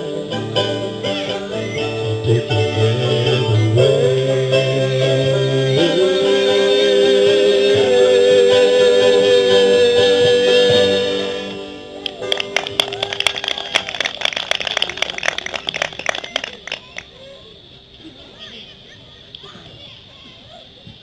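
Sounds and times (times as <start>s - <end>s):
band playing a ballad with singing: 0.0s - 11.9s.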